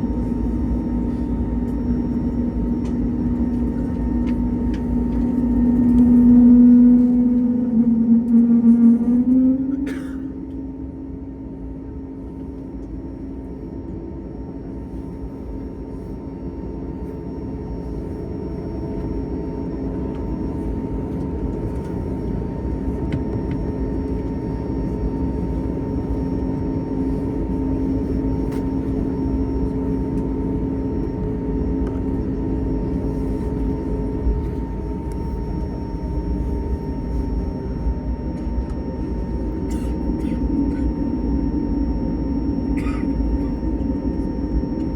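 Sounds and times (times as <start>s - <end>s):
faint high whine: 0.0s - 11.0s
airplane cabin engine rumble: 0.0s - 44.9s.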